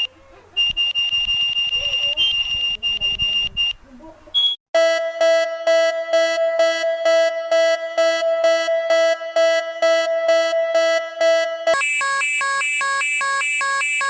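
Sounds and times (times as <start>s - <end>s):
high electronic beep: 4.4s - 14.0s
pulsing synthesized tone pattern: 4.8s - 14.0s.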